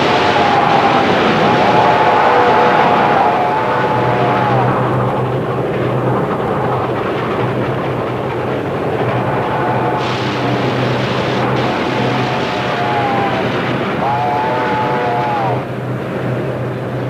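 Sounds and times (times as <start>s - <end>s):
train whistle chord: 0.0s - 5.2s, 9.4s - 15.7s
steady low hum: 0.0s - 17.0s
train running rumble: 0.0s - 17.0s.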